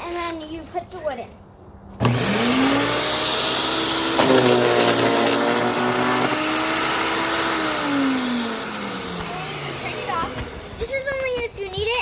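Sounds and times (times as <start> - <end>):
wood being chipped crunching: 2.0 - 11.0
electric wood chipper running: 2.0 - 11.5.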